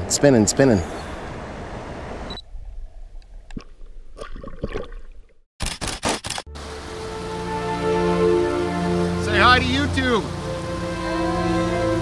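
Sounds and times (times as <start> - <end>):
sharp clicks: 5.6 - 6.5
creek water rushing: 6.5 - 12.0
music: 6.5 - 12.0.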